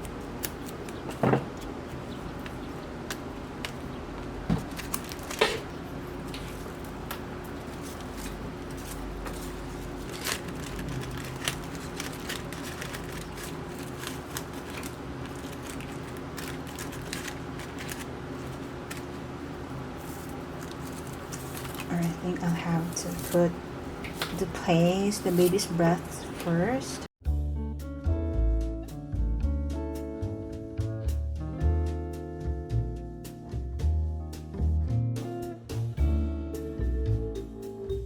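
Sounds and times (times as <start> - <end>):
stems and tape crinkling: 0.0 - 26.8.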